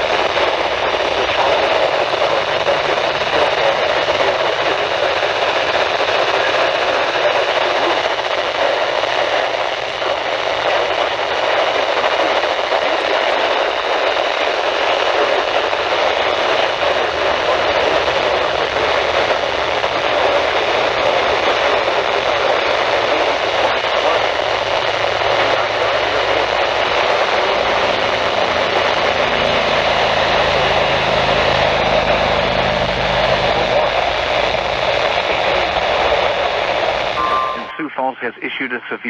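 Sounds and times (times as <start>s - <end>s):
radio static hiss: 0.0s - 29.4s, 33.5s - 39.0s.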